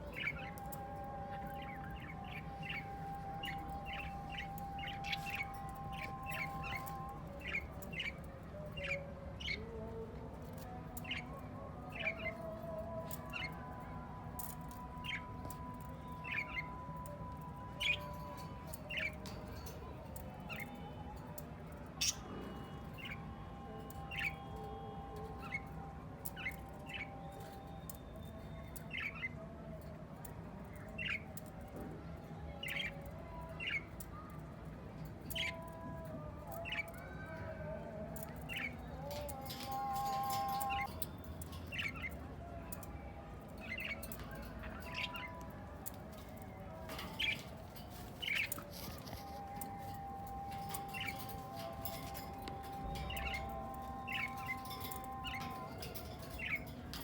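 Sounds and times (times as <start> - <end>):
parrots squawking: 46.8 - 57.0.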